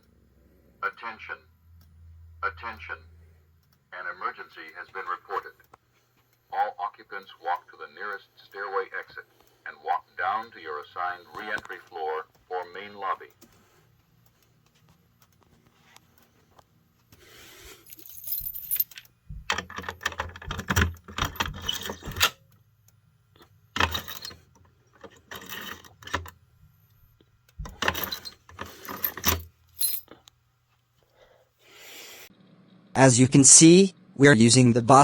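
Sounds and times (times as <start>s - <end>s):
jangling rustling handling noise: 17.7s - 22.3s, 27.6s - 30.2s.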